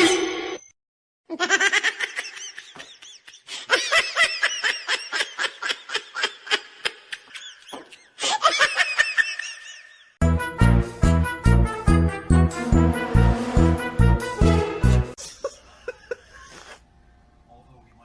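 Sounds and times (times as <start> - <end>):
rhythmic laughter: 14.8 - 16.5.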